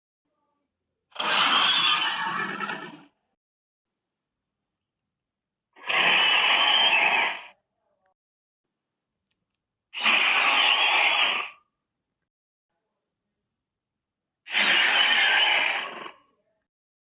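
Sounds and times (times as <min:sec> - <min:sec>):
breathy dinosaur hissing calls: 0:01.2 - 0:03.0, 0:05.8 - 0:07.6, 0:10.0 - 0:11.6, 0:14.5 - 0:16.2.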